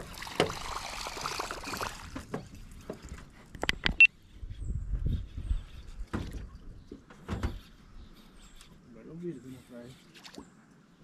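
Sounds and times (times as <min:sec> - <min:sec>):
water splashing: 0:00.0 - 0:03.2
sharp clicks and knocks: 0:02.3 - 0:04.1.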